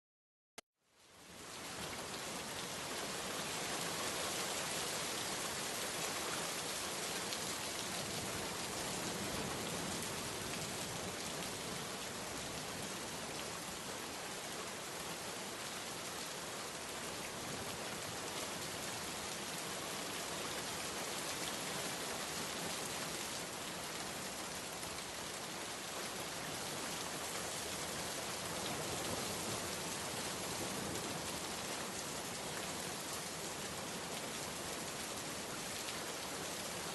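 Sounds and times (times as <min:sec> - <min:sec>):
steady rain patter: 0:00.9 - 0:36.9.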